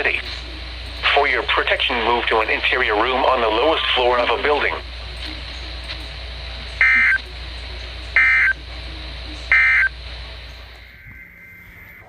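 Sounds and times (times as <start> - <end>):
low hum: 0.0 - 12.0
radio hiss: 0.0 - 12.0
digital data bursts: 6.6 - 12.0.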